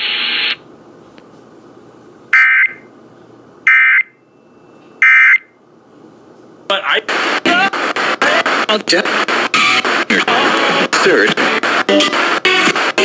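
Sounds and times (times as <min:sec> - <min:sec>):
hissy broadcast audio: 0:05.9 - 0:13.0.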